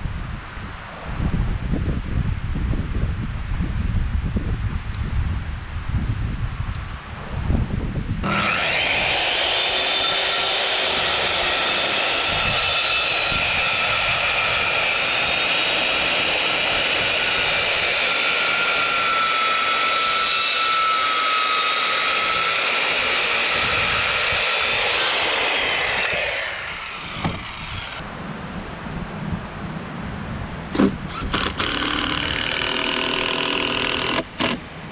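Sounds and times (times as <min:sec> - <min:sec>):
chainsaw cutting log: 0:08.2 - 0:28.0, 0:30.7 - 0:34.7.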